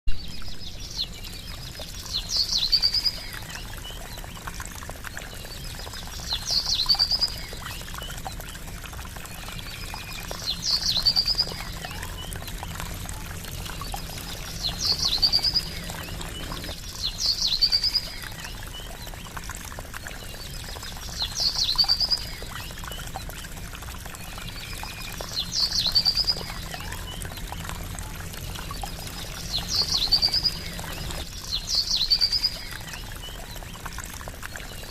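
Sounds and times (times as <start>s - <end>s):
water trickling and splashing: 0.1s - 34.9s
bird chirping: 13.9s - 18.5s, 28.8s - 33.4s.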